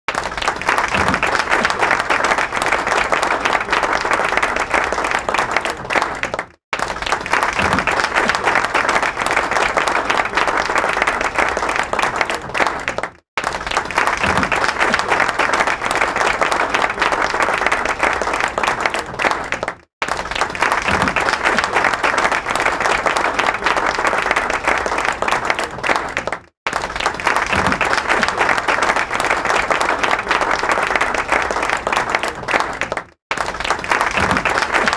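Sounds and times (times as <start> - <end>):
audience applauding: 0.1 - 34.9.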